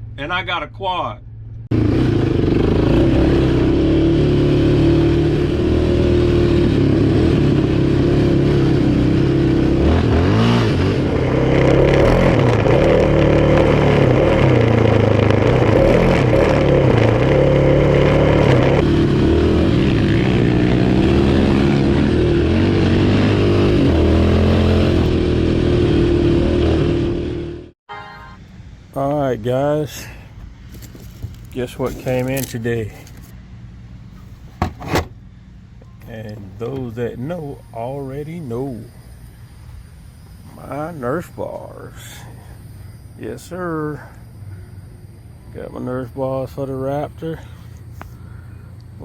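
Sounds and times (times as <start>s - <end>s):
quad engine revving: 1.7s - 27.7s.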